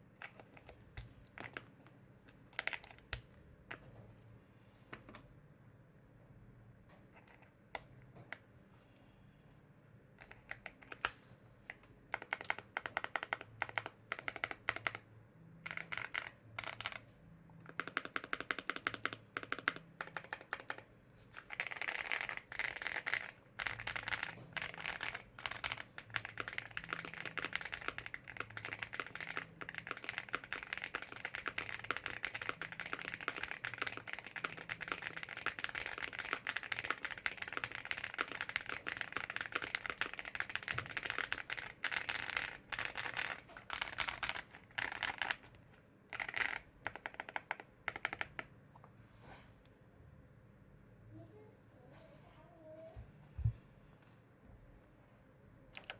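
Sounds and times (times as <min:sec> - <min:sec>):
fast mechanical keyboard typing: 0:00.2 - 0:01.7, 0:02.5 - 0:03.5, 0:12.1 - 0:48.5.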